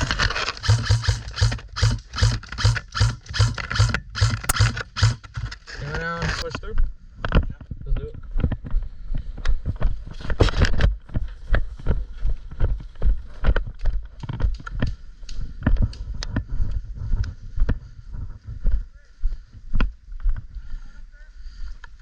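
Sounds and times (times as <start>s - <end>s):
microphone jostling rumble: 5.4s - 20.5s
running footsteps: 8.3s - 20.8s.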